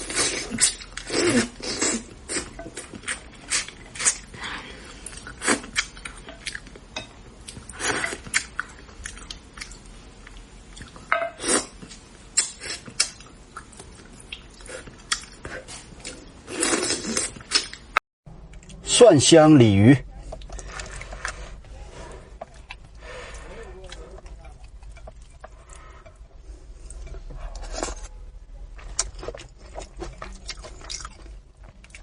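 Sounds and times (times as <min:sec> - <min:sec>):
person chewing and lip smacking: 0:11.8 - 0:15.4, 0:28.8 - 0:32.0.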